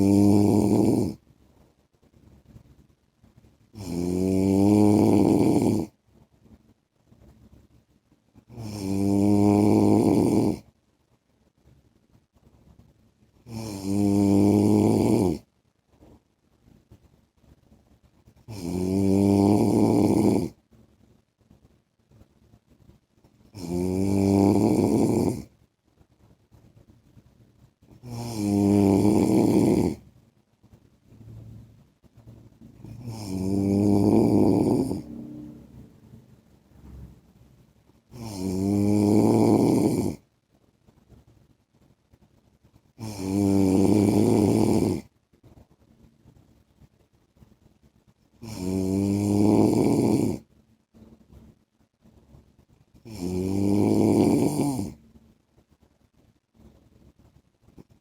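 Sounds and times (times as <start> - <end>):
man snoring: 0.0 - 1.2, 3.8 - 5.9, 8.5 - 10.6, 13.5 - 15.4, 18.5 - 20.6, 23.6 - 25.5, 28.0 - 30.0, 32.8 - 35.5, 38.1 - 40.2, 43.0 - 45.0, 48.4 - 50.4, 53.1 - 55.0.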